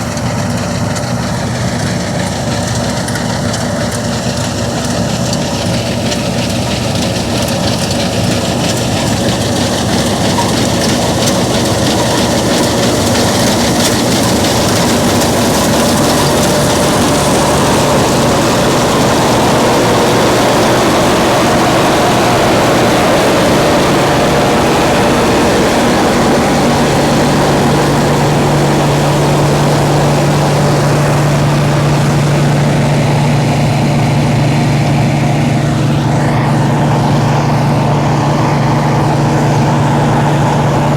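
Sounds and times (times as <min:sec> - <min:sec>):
combine harvester running: 0:00.0 - 0:40.9
low hum: 0:10.1 - 0:40.9.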